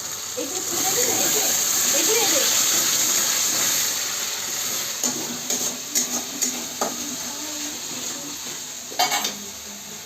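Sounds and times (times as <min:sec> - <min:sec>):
chicken sizzling in a pan: 0:00.0 - 0:10.0
spoon scraping and knocking pan: 0:05.0 - 0:07.1, 0:08.5 - 0:09.4.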